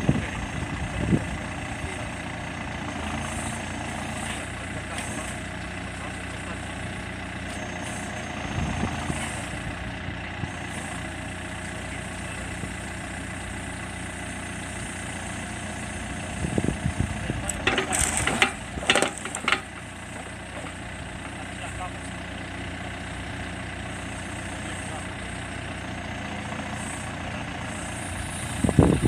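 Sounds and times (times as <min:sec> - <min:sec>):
diesel engine running: 0:00.0 - 0:29.0
metallic clanks and knocks: 0:17.5 - 0:19.8.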